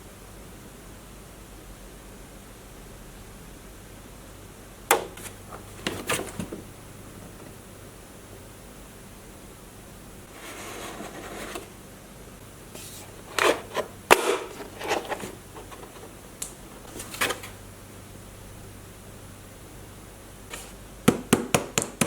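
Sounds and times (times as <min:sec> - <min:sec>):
handling knocks clicks and scrapes: 0:04.9 - 0:07.6, 0:12.8 - 0:17.6.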